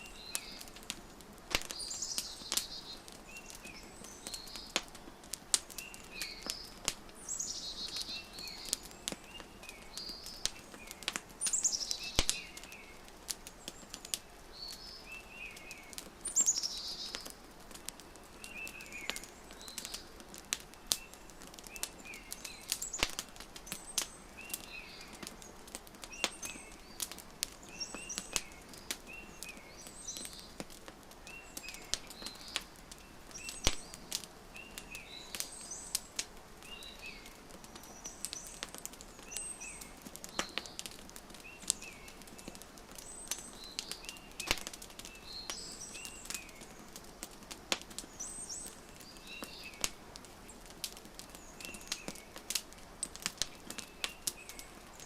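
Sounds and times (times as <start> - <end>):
birds chirping: 0.0 - 55.0
wood fire crackling and popping: 0.0 - 55.0.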